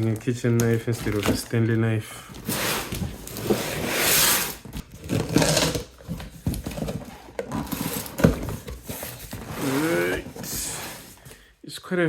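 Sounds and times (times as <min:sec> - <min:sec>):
knife cutting cardboard: 0:02.5 - 0:05.8, 0:07.6 - 0:11.2.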